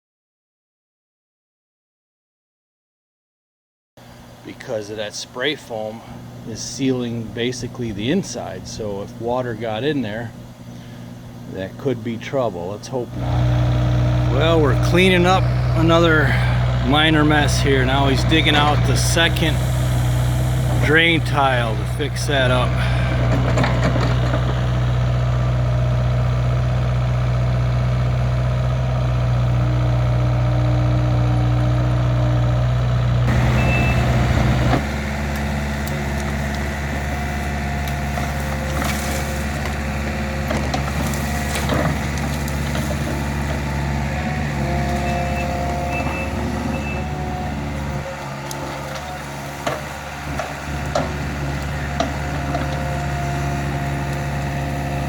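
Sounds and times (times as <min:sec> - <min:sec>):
excavator engine running: 0:12.9 - 0:55.0
bucket clanking in dirt: 0:22.7 - 0:24.6
short beeps: 0:33.5 - 0:34.2.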